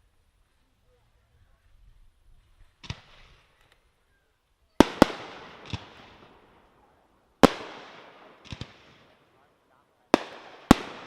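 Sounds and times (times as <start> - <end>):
fireworks banging: 2.8 - 3.5, 4.8 - 11.0.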